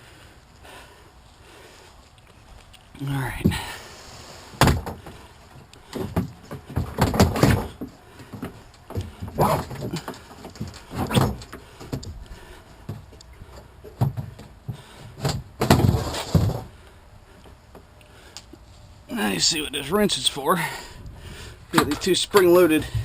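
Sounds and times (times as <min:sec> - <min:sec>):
kayak hull parts clunking: 0:04.6 - 0:16.8, 0:21.3 - 0:23.0.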